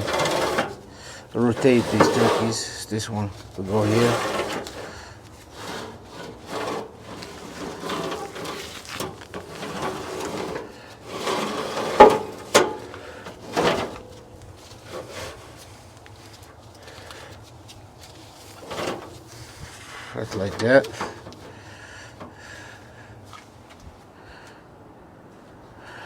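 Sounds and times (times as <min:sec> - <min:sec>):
scraping and handling on grate: 0:00.0 - 0:23.8.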